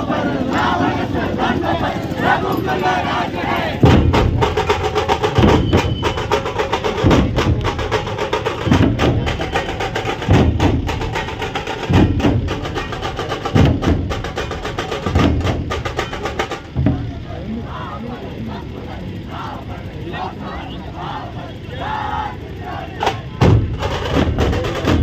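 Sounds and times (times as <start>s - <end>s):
drum-led music: 0.0s - 17.6s, 23.0s - 25.0s.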